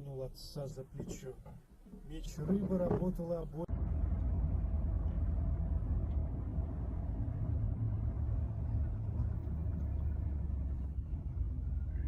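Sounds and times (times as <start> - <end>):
car engine rumbling: 0.3 - 12.0.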